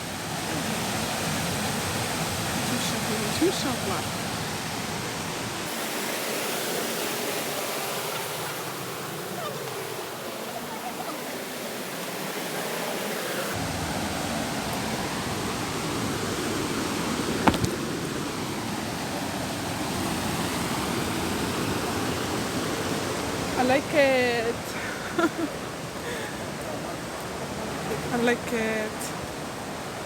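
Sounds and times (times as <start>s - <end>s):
river water rushing: 0.0s - 30.0s
sharp knock: 17.5s - 17.8s.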